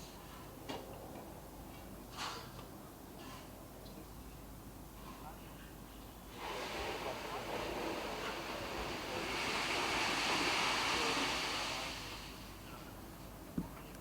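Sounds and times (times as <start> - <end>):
gust of wind hissing: 6.3 - 12.6.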